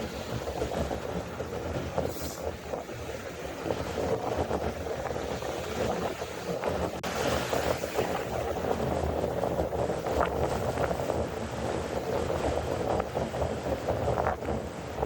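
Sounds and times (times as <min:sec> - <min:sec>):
sea waves washing: 0:00.0 - 0:15.0
wind buffeting microphone: 0:00.0 - 0:15.0.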